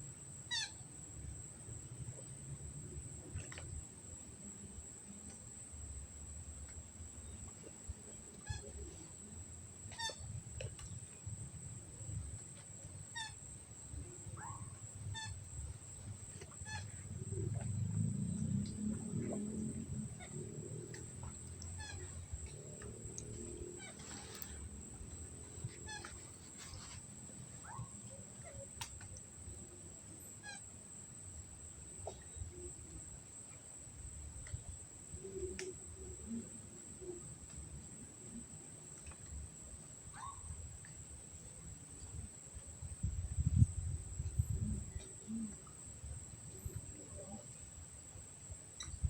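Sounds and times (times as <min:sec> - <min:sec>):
low rumble: 0:17.0 - 0:21.6
faint clicks: 0:20.8 - 0:27.0
squeaky animal calls: 0:21.6 - 0:22.2.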